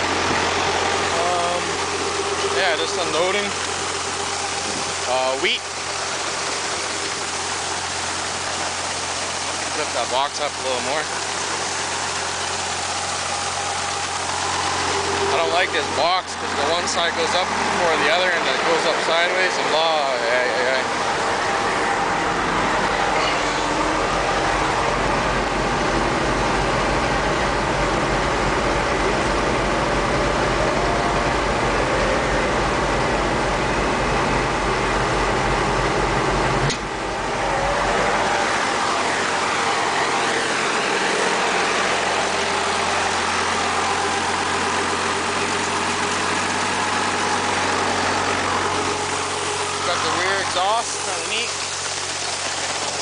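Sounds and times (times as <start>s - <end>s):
grain unloading: 0.0s - 26.0s, 36.0s - 53.0s
truck engines running: 0.0s - 53.0s.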